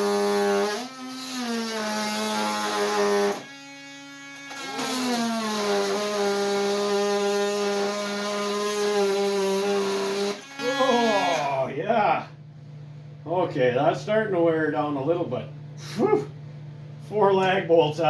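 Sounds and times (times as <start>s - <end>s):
oscillating tool cutting metal: 0.0s - 11.5s.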